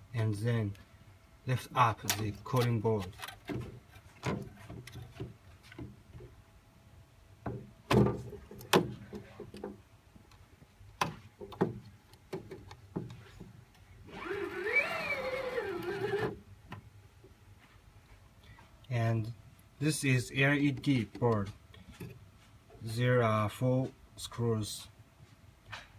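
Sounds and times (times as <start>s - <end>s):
wavering squeal: 14.1s - 16.3s.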